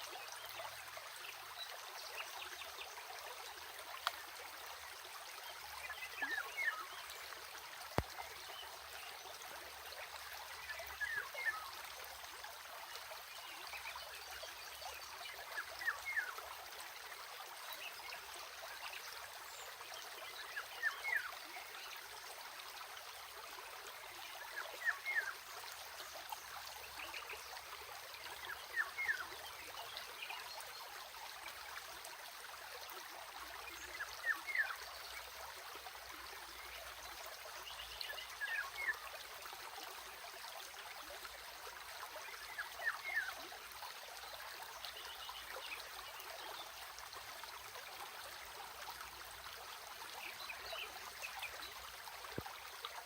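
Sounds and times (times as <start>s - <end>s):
stream trickling: 0.0s - 53.0s.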